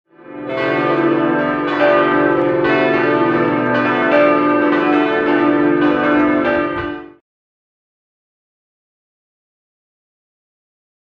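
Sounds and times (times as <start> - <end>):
large tower bell ringing: 0.1 - 7.2.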